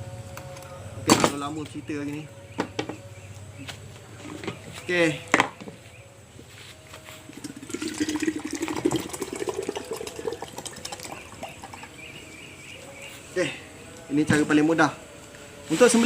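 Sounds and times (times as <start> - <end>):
liquid pouring into container: 7.3 - 12.0.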